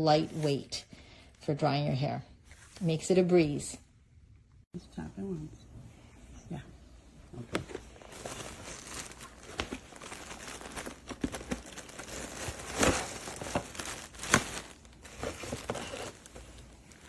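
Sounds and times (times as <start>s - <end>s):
crinkling rustles: 7.4s - 17.0s.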